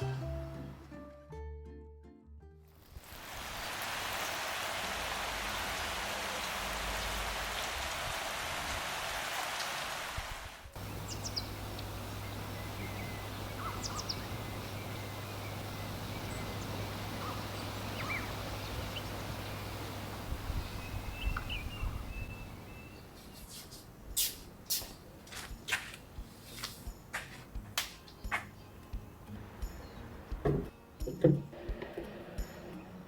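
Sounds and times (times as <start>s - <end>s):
steady low hum: 10.8s - 22.8s
birds chirping: 10.8s - 24.2s.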